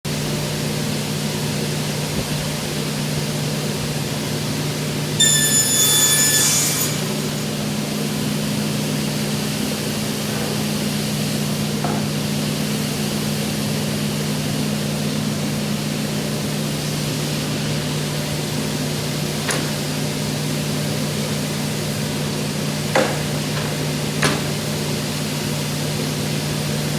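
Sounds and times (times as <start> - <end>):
panel saw humming: 2.7 - 26.9
saw blade cutting wood: 5.2 - 7.5.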